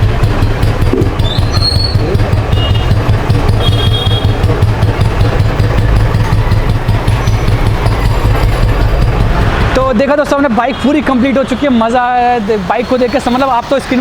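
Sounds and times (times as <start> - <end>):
motorcycle engine idling: 0.0 - 10.2.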